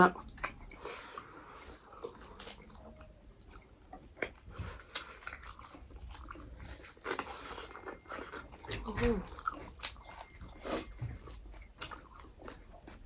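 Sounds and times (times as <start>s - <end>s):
person chewing food: 0.2s - 13.0s
eating clicks and smacks: 3.4s - 10.4s.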